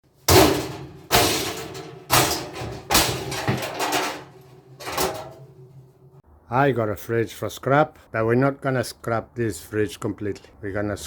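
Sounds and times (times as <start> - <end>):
heavy ringing bangs: 0.3 - 6.2.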